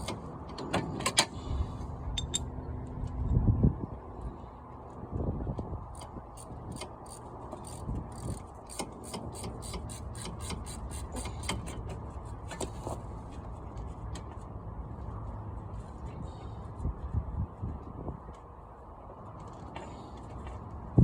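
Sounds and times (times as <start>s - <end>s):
hand ratchet clicking: 5.9s - 11.8s.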